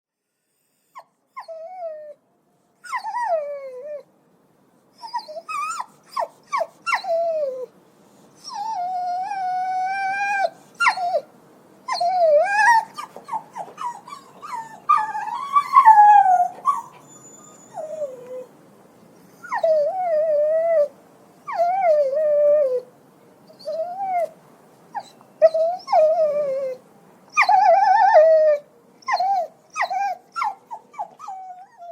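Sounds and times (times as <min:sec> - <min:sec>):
puppy yelping: 0:08.4 - 0:11.3, 0:11.9 - 0:18.5, 0:23.6 - 0:31.9.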